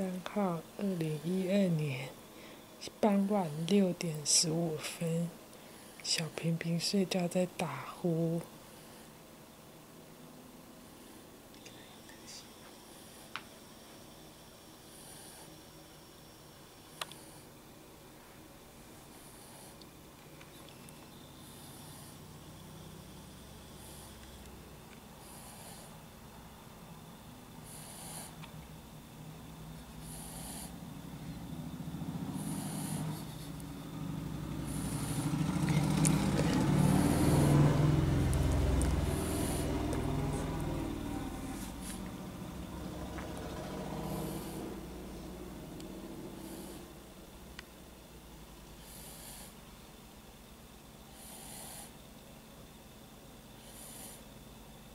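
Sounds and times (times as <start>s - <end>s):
soft snoring: 14.8s - 15.7s, 18.9s - 19.9s, 21.3s - 24.5s, 25.2s - 26.0s, 27.6s - 28.5s, 30.0s - 31.5s, 32.2s - 47.0s, 48.8s - 49.6s, 51.1s - 52.0s, 53.5s - 54.4s
person snoring: 32.2s - 33.6s, 34.6s - 42.1s, 43.4s - 44.9s
hissing breath: 32.3s - 33.7s, 34.6s - 38.2s, 38.9s - 40.5s, 43.8s - 44.8s.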